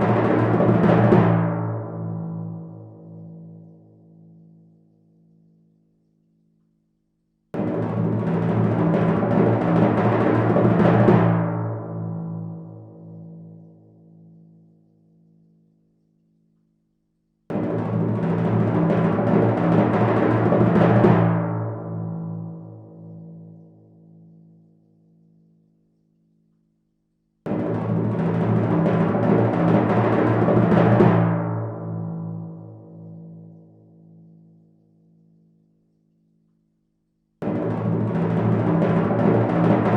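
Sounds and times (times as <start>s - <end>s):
timpani roll: 7.6s - 11.7s, 17.5s - 22.0s, 27.5s - 32.0s, 37.4s - 39.9s.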